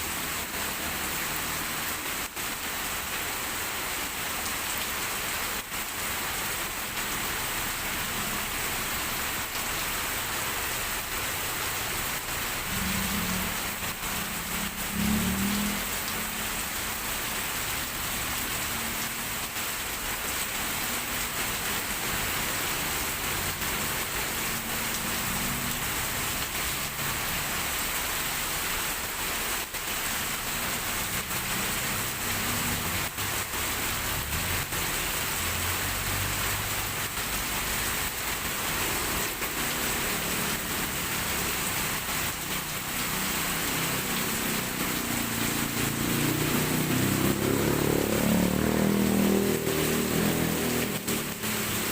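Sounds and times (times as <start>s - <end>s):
heavy rain falling: 0.0s - 51.9s
vehicle engine approaching: 12.7s - 16.0s, 43.5s - 51.8s.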